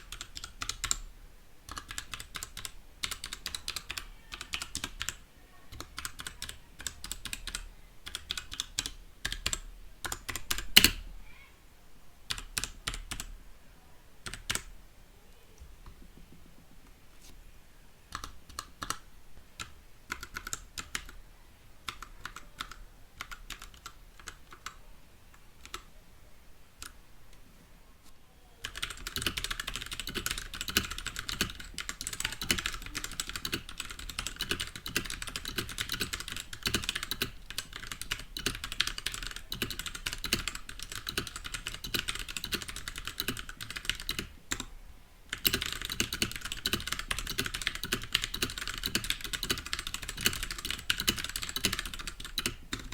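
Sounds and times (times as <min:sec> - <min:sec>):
typing on mechanical keyboard: 0:00.0 - 0:01.1, 0:01.7 - 0:11.0, 0:12.3 - 0:13.3, 0:14.2 - 0:14.7, 0:18.1 - 0:19.0, 0:19.6 - 0:21.2, 0:21.8 - 0:24.8, 0:25.6 - 0:25.9, 0:28.6 - 0:44.7, 0:45.3 - 0:52.9.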